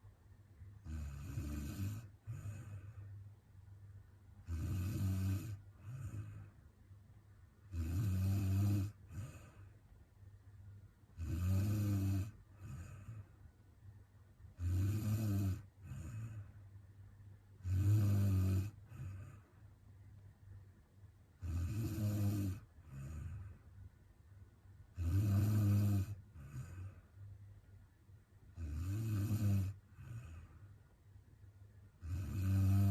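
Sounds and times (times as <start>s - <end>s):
woman snoring: 0.8s - 3.0s, 4.4s - 6.5s, 7.7s - 9.7s, 11.2s - 13.2s, 14.6s - 16.5s, 17.6s - 19.4s, 21.4s - 23.5s, 24.9s - 27.0s, 28.5s - 30.6s, 32.0s - 32.9s.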